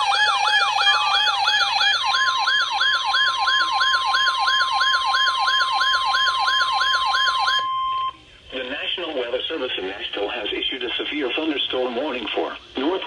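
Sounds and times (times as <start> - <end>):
electronic siren yelping: 0.0 - 8.1.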